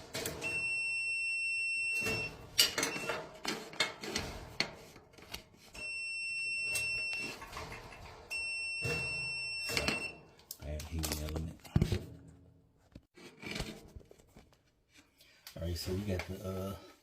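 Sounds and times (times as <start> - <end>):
multimeter continuity beep: 0.4 - 3.2, 5.8 - 7.4, 8.3 - 10.2.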